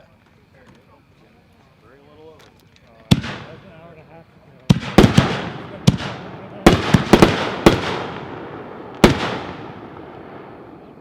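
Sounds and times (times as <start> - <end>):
loud firework bangs: 3.1 - 3.8, 4.7 - 11.0
echoing rumble: 4.7 - 11.0.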